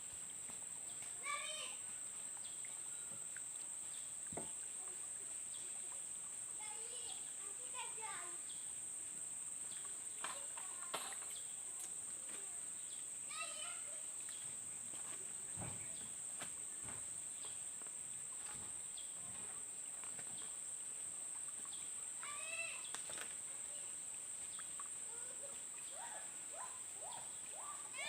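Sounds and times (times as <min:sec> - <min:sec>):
faint knocks: 0:14.9 - 0:17.6
bird-like calls: 0:24.6 - 0:28.0.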